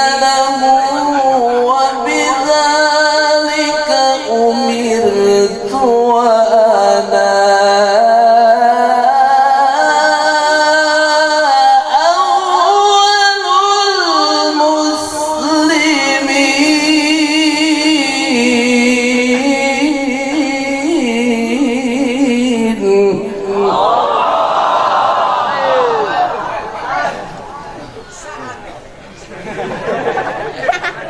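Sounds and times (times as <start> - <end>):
man reciting melodically: 0.0 - 24.1.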